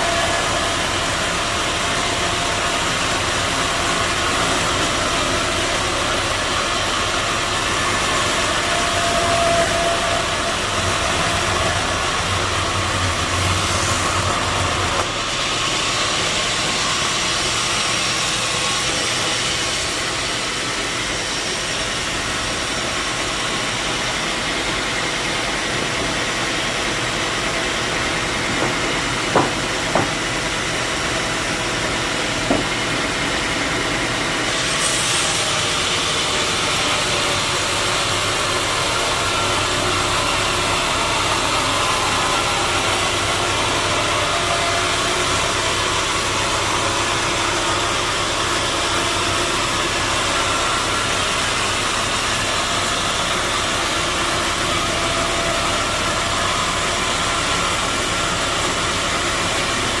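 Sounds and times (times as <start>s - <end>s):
sawmill machinery running: 0.0s - 60.0s
single knock: 28.6s - 30.2s, 32.5s - 32.7s.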